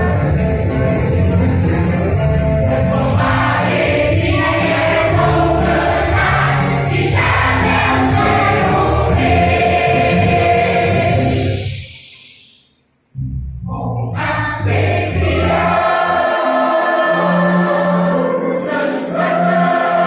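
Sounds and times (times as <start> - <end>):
instrumental accompaniment: 0.0 - 11.8
choir singing: 0.0 - 11.9, 14.1 - 20.0.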